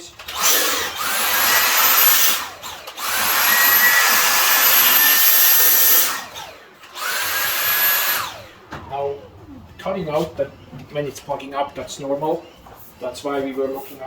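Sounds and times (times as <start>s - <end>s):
cordless vacuum motor whining: 0.2s - 11.0s.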